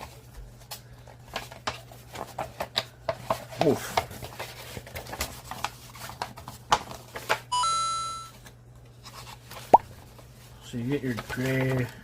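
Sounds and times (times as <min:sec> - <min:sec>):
cardboard pieces clicking and rustling: 0:00.6 - 0:07.4
electronic chime: 0:07.6 - 0:08.3.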